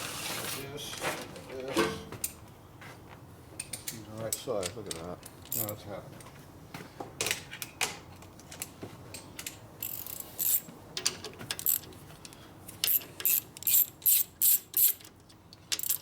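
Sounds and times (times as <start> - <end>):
socket ratchet clicking: 5.5 - 5.8, 12.8 - 15.1, 15.8 - 16.0.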